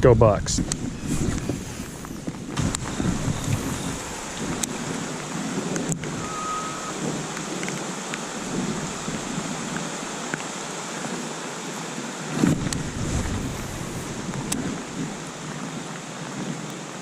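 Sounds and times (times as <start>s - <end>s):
low rumble of thunder: 0.0s - 10.4s, 12.4s - 15.5s
heavy rain falling: 0.6s - 17.0s.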